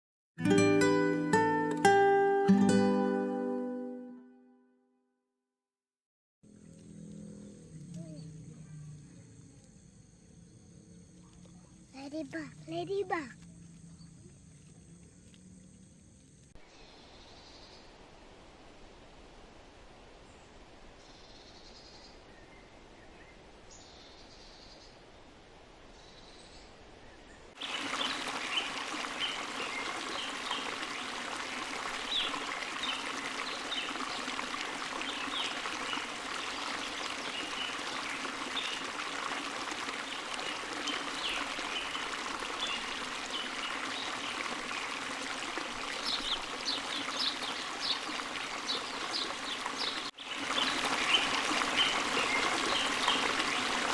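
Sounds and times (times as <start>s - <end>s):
water trickling and splashing: 6.4s - 8.6s, 11.0s - 16.6s, 27.5s - 53.9s
faint high chirps: 6.6s - 16.5s.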